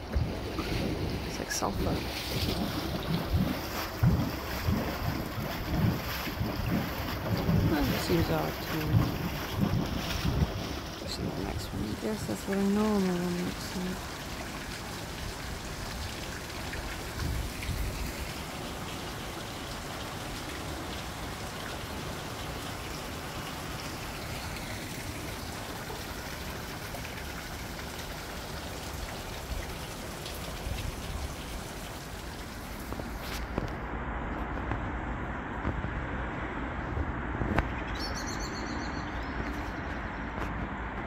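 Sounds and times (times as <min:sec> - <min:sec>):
water splashing: 0:00.0 - 0:33.9.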